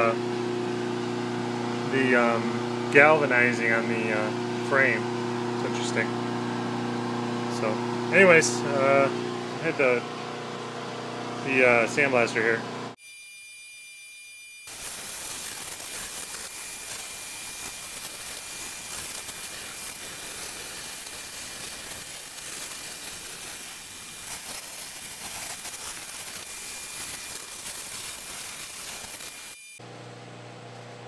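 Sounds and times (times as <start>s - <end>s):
sandblaster hissing on steel: 14.6s - 29.8s.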